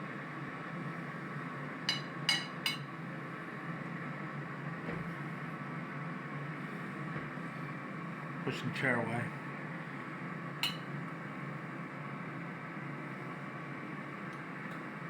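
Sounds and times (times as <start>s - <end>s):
steady electrical hum: 0.0s - 15.0s
utensil clinking against dish: 1.9s - 2.9s, 10.6s - 10.9s.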